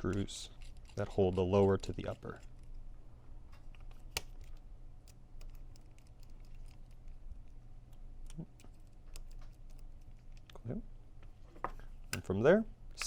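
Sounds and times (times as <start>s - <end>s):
small clicks and taps of metal parts: 0.0s - 2.7s, 3.5s - 10.6s.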